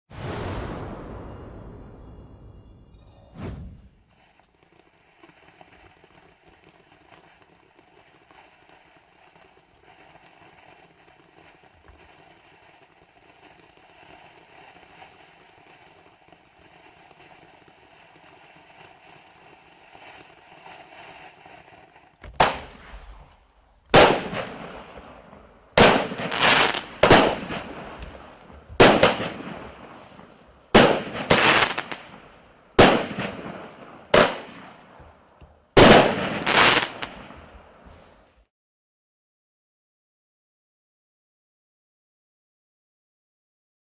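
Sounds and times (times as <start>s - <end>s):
loud sharp firework bursts: 0.1s - 1.9s, 3.4s - 38.3s
faint firework hiss: 0.1s - 38.5s.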